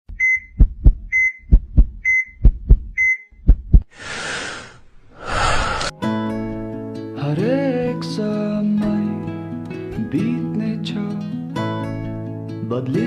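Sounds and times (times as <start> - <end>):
heartbeat double thumps: 0.1 - 3.9.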